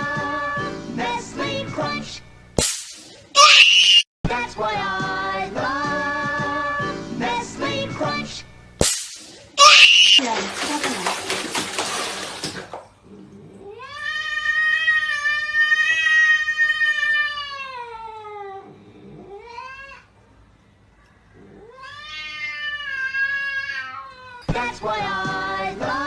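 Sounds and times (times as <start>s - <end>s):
cat yowling: 3.4s - 4.0s, 9.6s - 10.2s, 13.7s - 20.1s, 21.5s - 24.5s.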